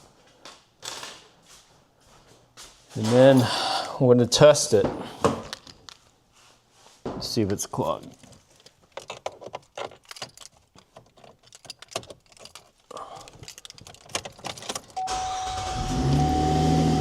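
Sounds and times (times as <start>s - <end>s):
light clicks and rattles: 7.4s - 15.0s
car engine starting and running: 14.9s - 17.0s.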